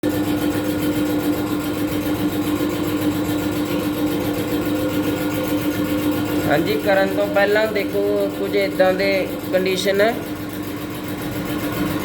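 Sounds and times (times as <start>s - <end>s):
machine humming steadily: 0.0s - 12.0s.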